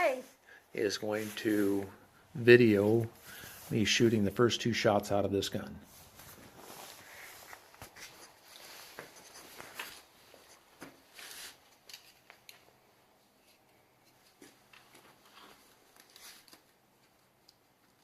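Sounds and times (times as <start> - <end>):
faint rustling: 0.8 - 12.3.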